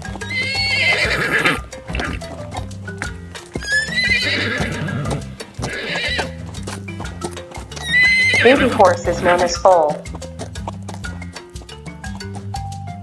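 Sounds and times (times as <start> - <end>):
background music: 0.0 - 13.0
horse whinnying: 0.1 - 2.7, 3.4 - 6.5, 7.7 - 9.7.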